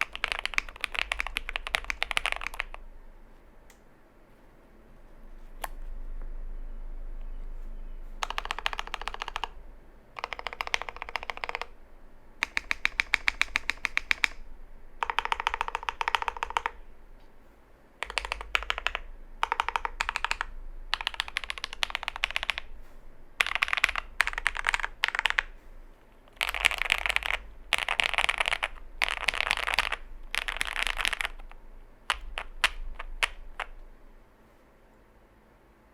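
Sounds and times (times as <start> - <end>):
fast typing on mechanical keyboard: 0.0 - 2.8, 8.2 - 9.6, 10.2 - 11.8, 12.4 - 16.8, 18.0 - 22.7, 23.4 - 25.6, 26.2 - 33.8.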